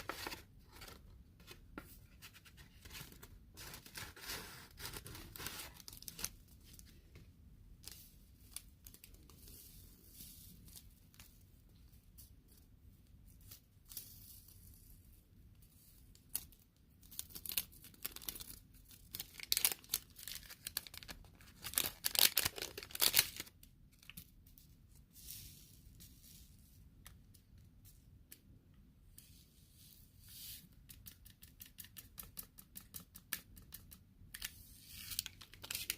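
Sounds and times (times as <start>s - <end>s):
seed packets crinkling: 17.2s - 23.5s.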